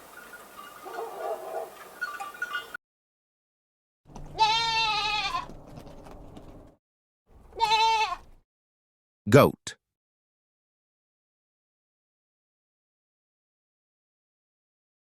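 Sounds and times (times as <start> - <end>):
goat bleating: 4.3 - 5.5, 7.5 - 8.3.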